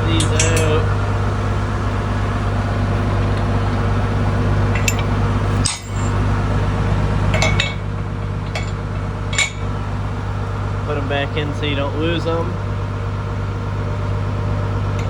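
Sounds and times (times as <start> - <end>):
metal pins clinking: 0.0 - 0.9, 4.7 - 6.3, 7.3 - 9.8
tractor engine idling: 0.0 - 15.0.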